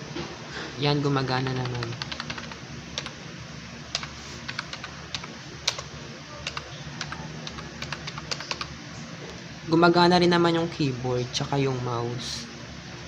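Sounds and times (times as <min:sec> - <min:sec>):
keyboard typing clicks: 0:01.4 - 0:03.2, 0:03.9 - 0:08.7.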